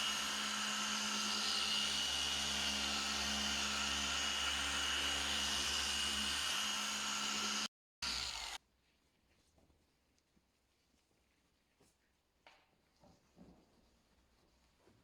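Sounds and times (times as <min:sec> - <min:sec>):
polishing machine whine: 0:02.2 - 0:08.6.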